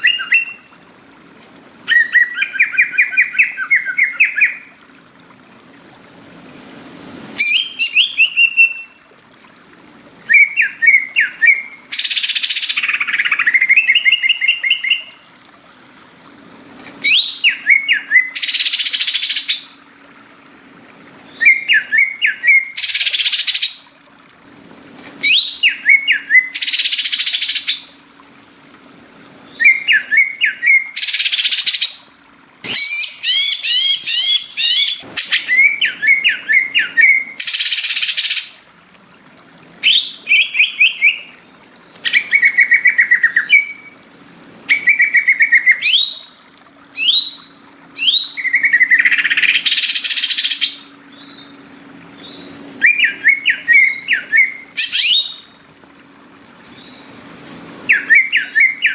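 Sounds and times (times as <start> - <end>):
bird rising chirps: 7.3 - 9.0, 44.7 - 55.6, 57.8 - 58.9.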